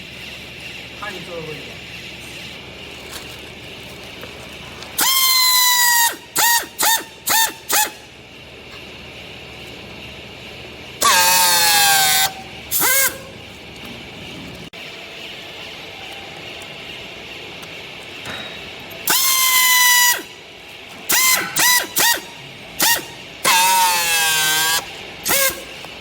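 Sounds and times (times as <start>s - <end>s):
steady mechanical hum: 0.0s - 26.0s
horn blasts and toots: 21.1s - 25.8s.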